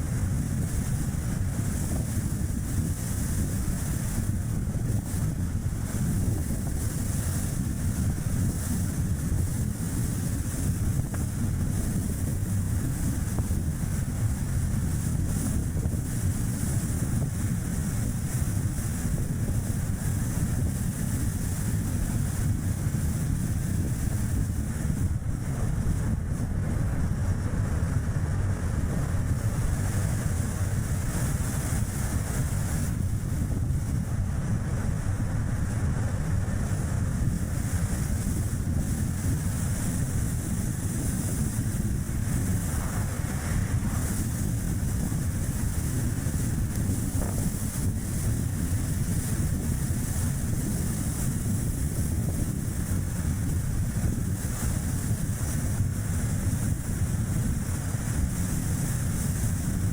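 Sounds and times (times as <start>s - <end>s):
car road and tyre noise: 0.0s - 59.9s
wind on microphone: 0.0s - 59.9s.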